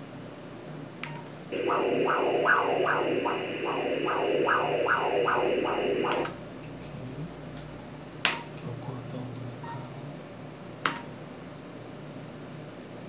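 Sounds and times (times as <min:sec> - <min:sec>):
pulsing doppler whooshes: 0:01.5 - 0:06.2.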